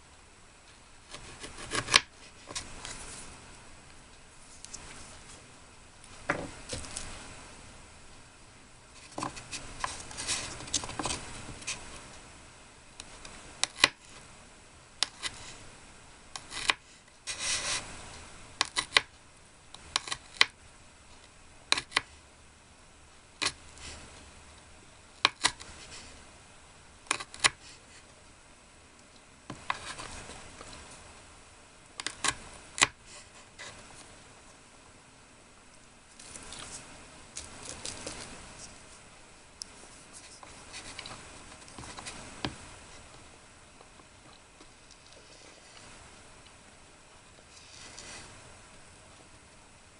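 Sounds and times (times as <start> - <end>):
rubbing and scraping: 1.1 - 3.4, 8.9 - 12.1, 16.4 - 17.9, 39.8 - 43.1, 47.5 - 48.4.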